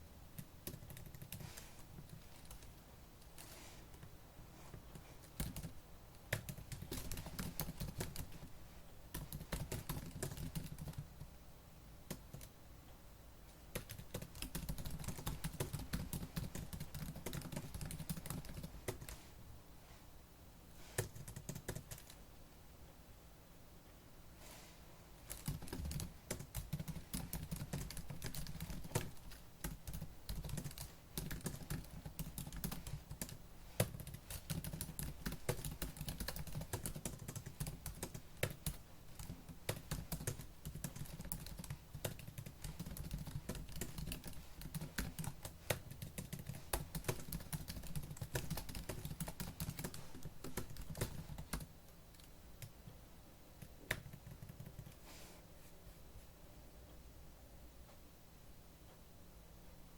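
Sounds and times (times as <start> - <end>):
fast typing on laptop keyboard: 0.4 - 3.5, 5.2 - 8.5, 9.1 - 11.3, 12.1 - 12.6, 13.7 - 19.2, 21.0 - 22.2, 25.2 - 52.8, 53.6 - 55.0.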